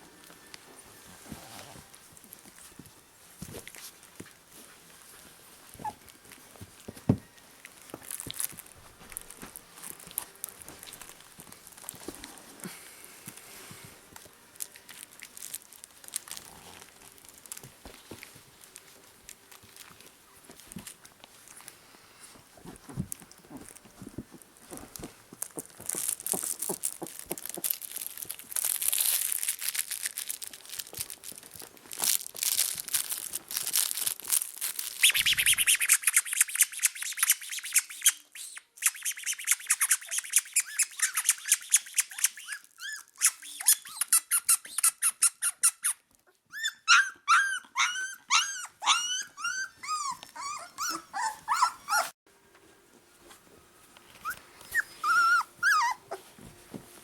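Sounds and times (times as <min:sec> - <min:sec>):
puppies squeaking and whining: 0:05.7 - 0:06.1, 0:25.4 - 0:27.9, 0:35.0 - 0:52.2, 0:54.2 - 0:56.3.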